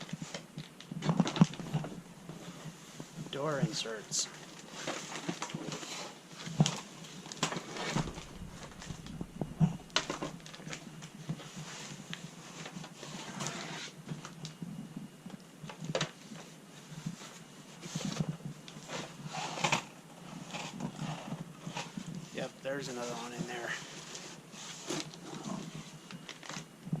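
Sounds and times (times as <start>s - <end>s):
cardboard packaging rustling: 1.0s - 2.8s, 4.4s - 13.2s.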